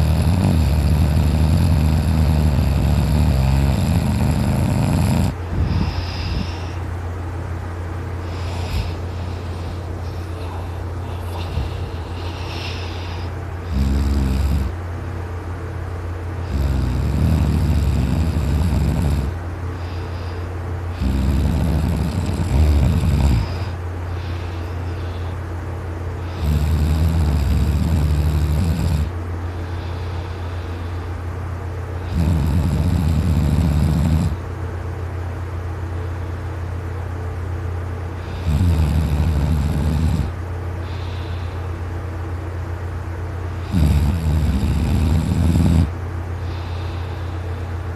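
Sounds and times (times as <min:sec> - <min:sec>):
person snoring loudly: 0:00.0 - 0:06.8, 0:08.2 - 0:14.8, 0:16.4 - 0:20.2, 0:20.9 - 0:25.4, 0:26.2 - 0:29.1, 0:32.0 - 0:34.4, 0:38.2 - 0:41.4, 0:43.6 - 0:47.5
steady low hum: 0:00.0 - 0:47.9.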